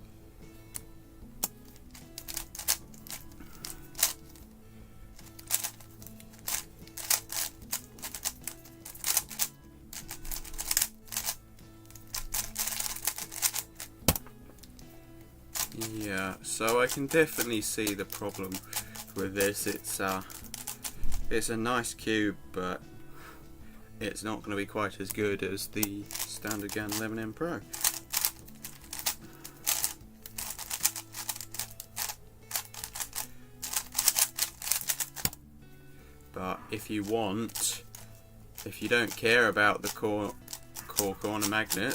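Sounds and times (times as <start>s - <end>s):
background music: 0.0s - 41.9s
speedcube clicking and clacking: 0.7s - 4.4s, 5.2s - 14.7s, 15.5s - 21.2s, 25.8s - 35.4s, 37.0s - 41.9s.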